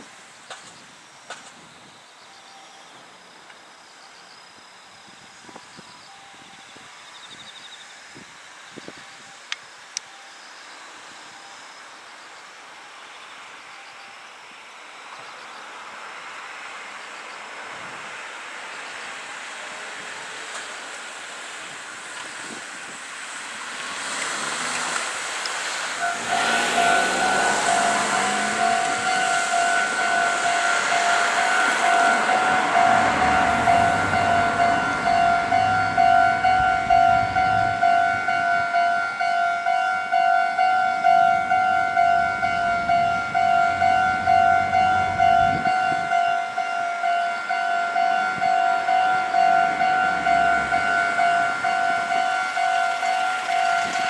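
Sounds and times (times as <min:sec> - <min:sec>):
broad rushing noise: 0:19.2 - 0:39.5
level crossing bell ringing: 0:26.0 - 0:54.0.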